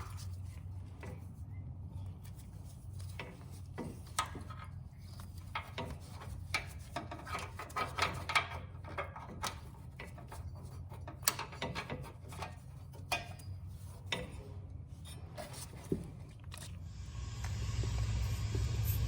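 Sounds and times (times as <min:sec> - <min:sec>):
low hum: 0:16.7 - 0:19.0
rising hiss: 0:16.9 - 0:19.0.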